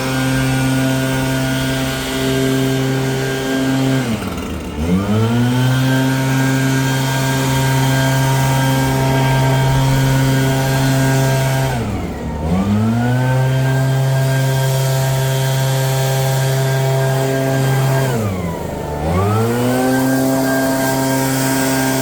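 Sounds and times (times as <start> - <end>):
small petrol engine revving: 0.0 - 22.0.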